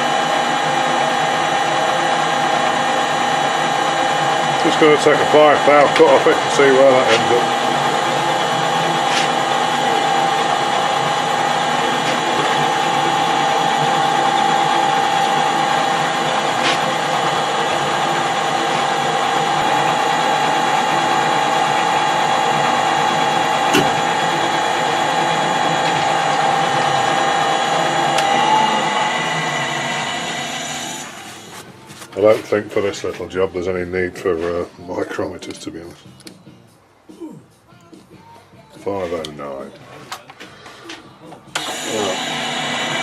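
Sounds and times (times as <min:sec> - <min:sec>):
metal lathe gear whine: 0:00.0 - 0:31.6, 0:41.5 - 0:43.0.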